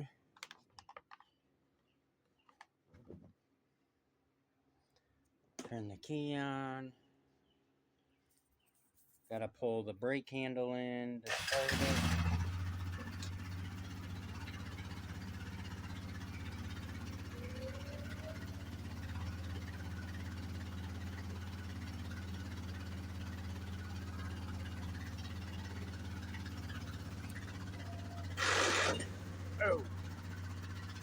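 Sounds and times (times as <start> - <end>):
atv engine idling: 11.3 - 31.0.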